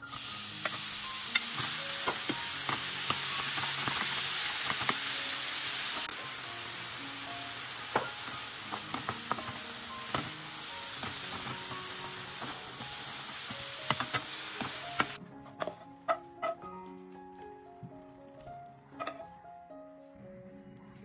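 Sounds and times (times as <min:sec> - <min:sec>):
sizzling hiss: 0:00.0 - 0:15.2
soft music: 0:00.0 - 0:21.0.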